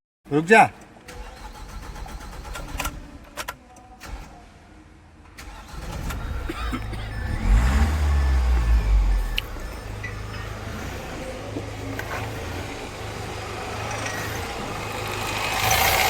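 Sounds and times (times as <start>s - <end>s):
diesel engine revving: 5.3s - 16.0s.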